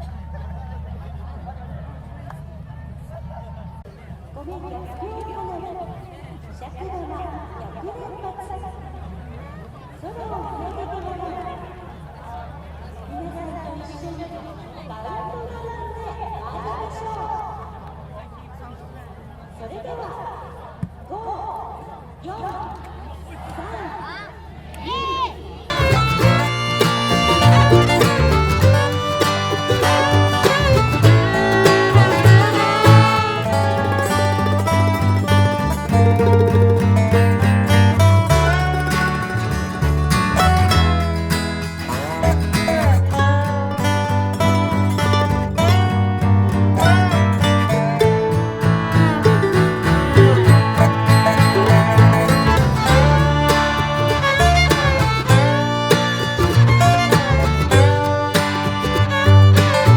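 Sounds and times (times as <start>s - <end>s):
bass line with repeating beat: 25.7s - 41.5s, 45.6s - 58.0s, 58.8s - 59.9s
fiddle: 25.7s - 59.9s
plucked string instruments: 25.7s - 59.9s.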